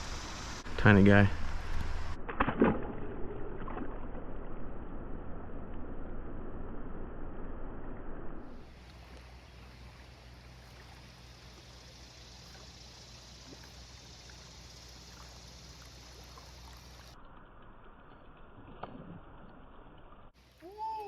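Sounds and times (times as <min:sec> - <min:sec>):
creek water flowing: 0:00.0 - 0:02.2, 0:08.5 - 0:21.0.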